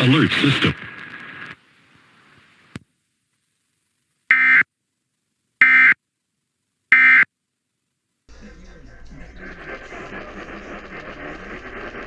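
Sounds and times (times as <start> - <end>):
faint click: 0.8 - 2.9.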